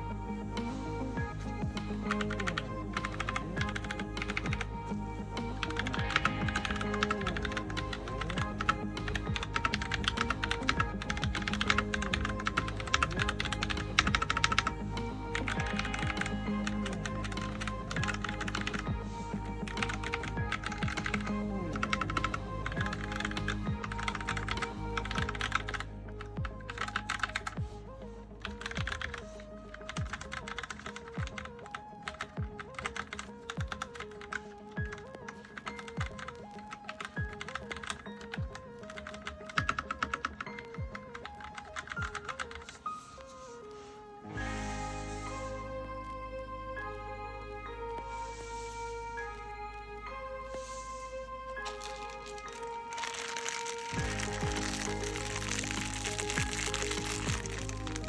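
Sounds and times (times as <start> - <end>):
background music: 0.0 - 58.0
mechanical keyboard typing: 2.0 - 4.7, 5.6 - 27.6, 28.5 - 42.8, 51.6 - 58.0.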